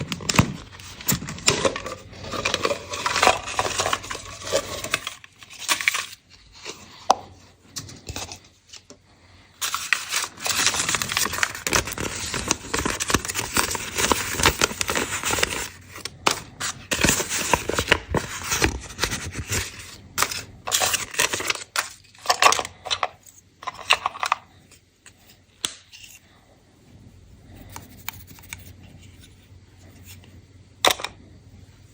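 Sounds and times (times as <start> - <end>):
candy wrapper crinkling: 0.0 - 7.3, 9.6 - 24.5.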